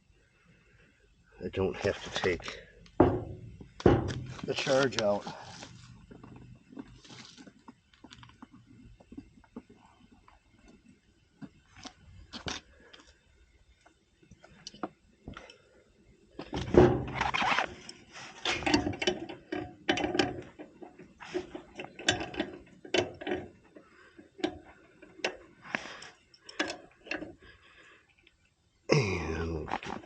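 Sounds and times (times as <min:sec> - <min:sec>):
metal tools clinking and scraping: 0:03.9 - 0:06.4.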